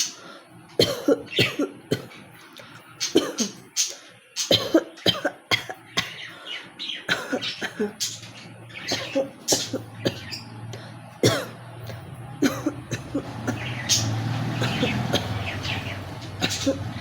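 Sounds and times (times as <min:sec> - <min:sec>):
person coughing: 0:00.8 - 0:02.1, 0:03.1 - 0:03.6, 0:04.5 - 0:06.2, 0:07.1 - 0:08.0, 0:08.9 - 0:10.2, 0:11.2 - 0:11.6, 0:12.4 - 0:13.6, 0:16.4 - 0:16.8.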